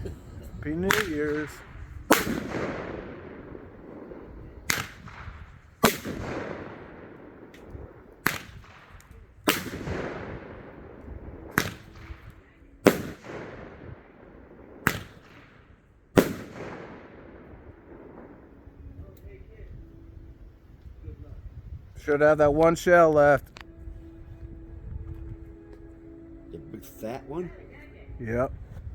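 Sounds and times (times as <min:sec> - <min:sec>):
fireworks bangs echoing: 0:00.0 - 0:19.1.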